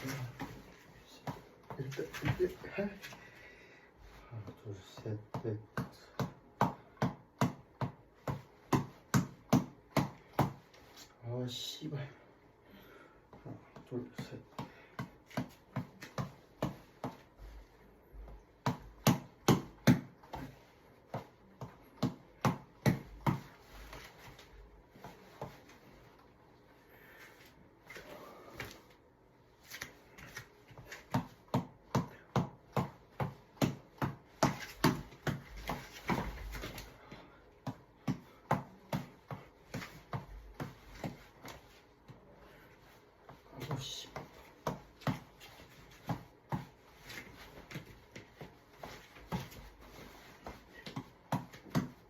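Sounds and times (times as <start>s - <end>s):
reflex ball being punched: 4.5s - 10.8s, 13.4s - 24.4s, 29.7s - 37.0s, 37.6s - 42.2s, 43.2s - 52.0s.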